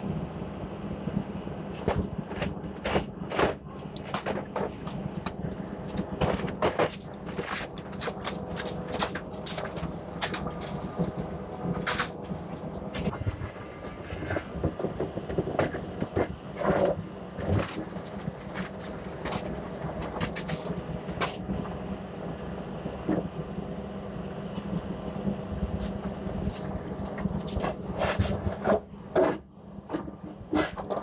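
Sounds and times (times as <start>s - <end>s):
heavy diesel engine running: 0.0s - 31.0s
demolition knocks and crunches: 1.8s - 11.2s, 11.8s - 21.5s.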